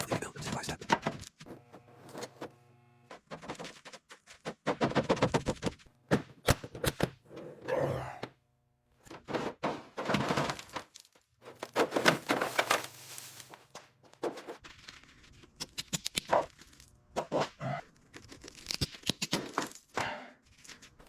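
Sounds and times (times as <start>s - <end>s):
knocks and clunks: 4.4s - 7.2s.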